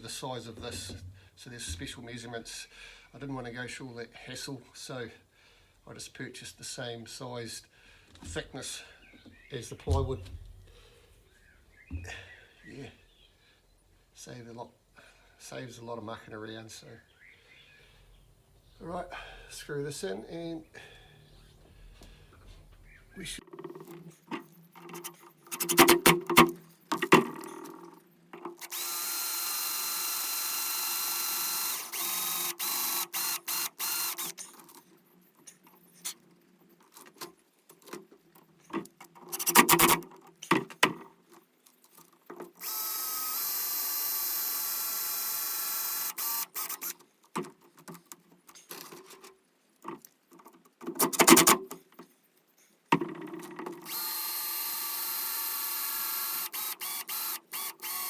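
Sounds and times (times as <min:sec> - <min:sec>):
power drill driving screws: 0:24.9 - 0:26.6, 0:28.6 - 0:34.6, 0:39.3 - 0:40.0, 0:42.6 - 0:47.0, 0:51.0 - 0:51.6, 0:53.8 - 0:58.0.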